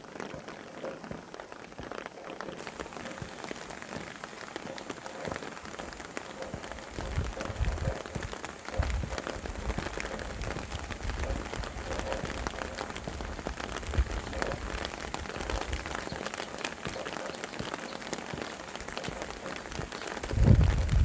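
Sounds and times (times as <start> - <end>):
rain hiss: 0.0 - 21.0
raindrops ticking: 0.0 - 21.0
low wind rumble: 5.8 - 16.1, 20.2 - 21.0.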